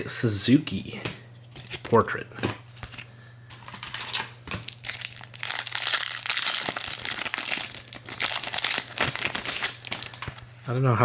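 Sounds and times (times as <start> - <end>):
foil wrapper crinkling and tearing: 3.6 - 10.5.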